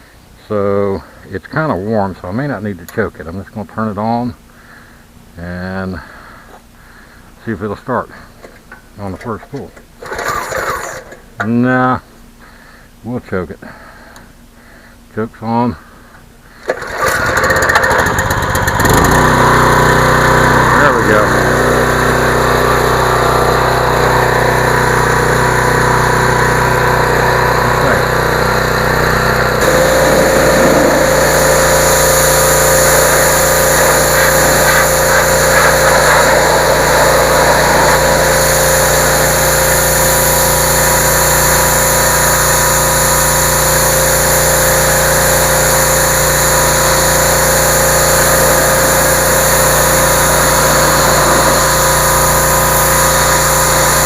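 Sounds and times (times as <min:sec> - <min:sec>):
pressure washer engine running: 0:10.0 - 0:11.1, 0:16.6 - 0:54.0.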